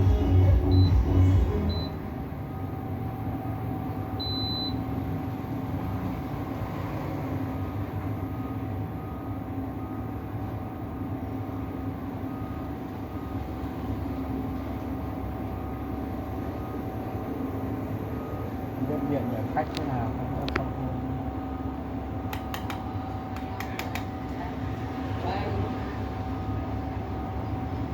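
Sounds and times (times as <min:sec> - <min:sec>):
cooktop hum with fan noise: 0:00.0 - 0:27.9
control panel beeps: 0:00.6 - 0:02.0, 0:04.2 - 0:04.8.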